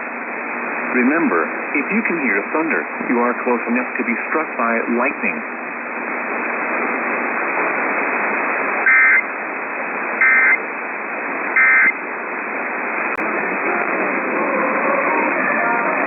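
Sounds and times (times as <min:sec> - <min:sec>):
radio static hiss: 0:00.0 - 0:14.5
two-tone digital squawks: 0:08.9 - 0:09.2, 0:10.2 - 0:10.6, 0:11.6 - 0:12.0.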